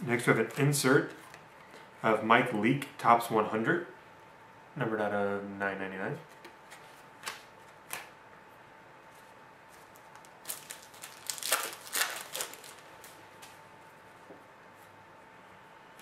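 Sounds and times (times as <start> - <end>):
faint steady hum: 0.0 - 16.0
crinkly rustling of card pack: 9.1 - 13.6.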